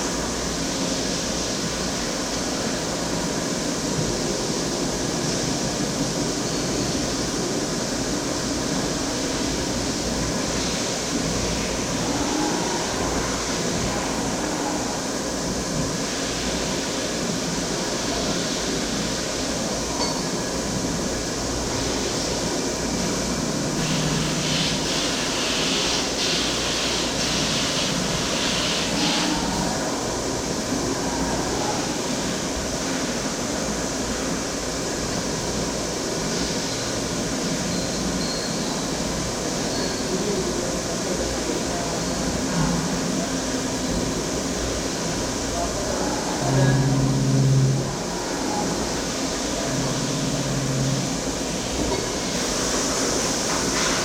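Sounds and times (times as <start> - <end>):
cnc machine running: 44.7 - 52.2.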